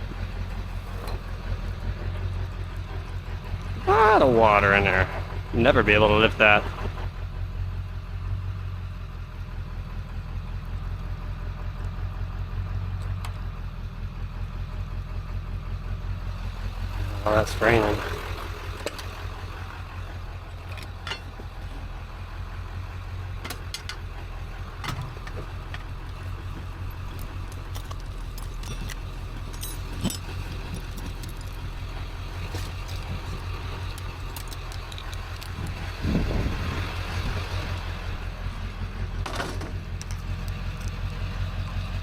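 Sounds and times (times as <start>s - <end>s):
vehicle engine idling: 0.0s - 42.0s
sharp metal clinks: 27.6s - 31.6s.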